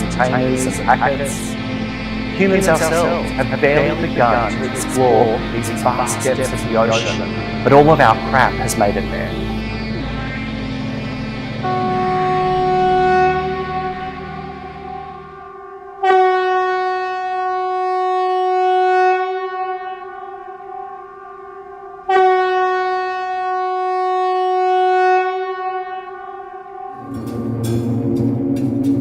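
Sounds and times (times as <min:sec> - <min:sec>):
long steady horn-like note: 0:00.0 - 0:27.9
low musical rumbling with clicks: 0:27.0 - 0:29.0.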